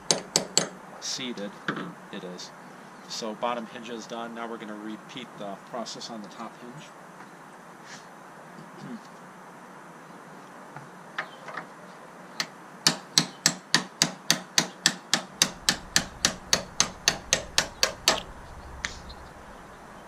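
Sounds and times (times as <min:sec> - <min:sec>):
hammer striking a tool: 0:00.0 - 0:00.8, 0:12.9 - 0:18.3.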